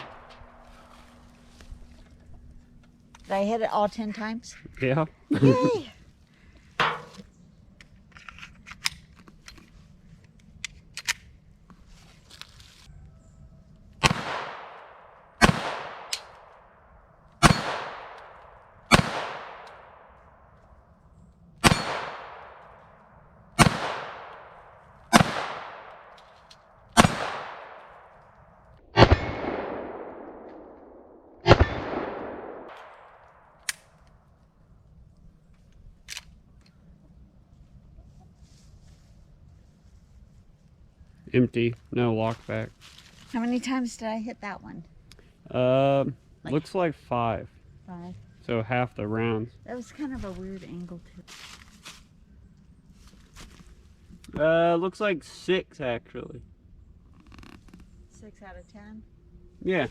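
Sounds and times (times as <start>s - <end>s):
gun handling clicks: 7.8s - 11.4s, 16.0s - 16.5s, 32.7s - 34.2s, 35.5s - 36.8s
pistol shots echoing: 14.0s - 16.4s, 17.4s - 20.1s, 21.6s - 22.8s, 23.6s - 26.1s, 27.0s - 28.1s, 29.0s - 33.6s.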